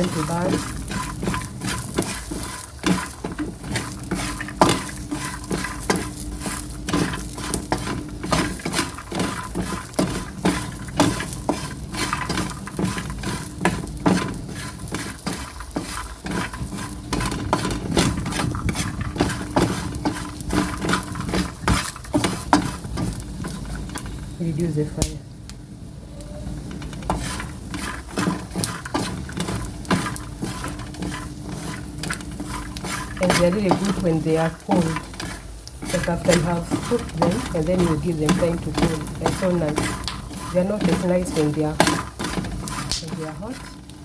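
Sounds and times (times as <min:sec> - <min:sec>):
spoon scraping a pan: 0:00.0 - 0:24.4, 0:26.5 - 0:44.0
faint sizzle: 0:00.0 - 0:44.0.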